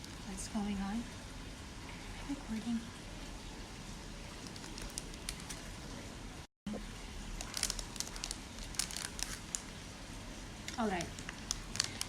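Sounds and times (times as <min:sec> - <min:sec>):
low room hum: 0:00.0 - 0:12.0
rustles and clicks of packaging: 0:04.3 - 0:05.8, 0:07.3 - 0:09.8, 0:10.7 - 0:12.0.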